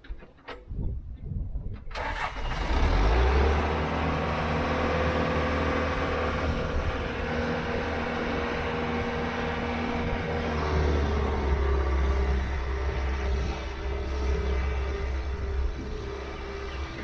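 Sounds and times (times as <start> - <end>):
diesel engine starting and running: 1.9 - 17.0.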